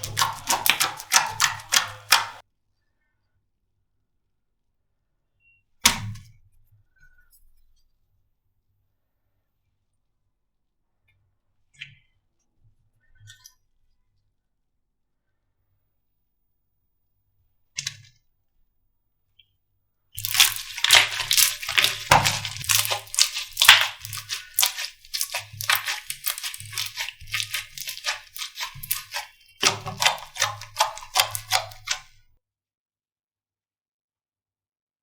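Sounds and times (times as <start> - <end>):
slime squishing and popping: 0.0 - 2.4, 20.2 - 32.1.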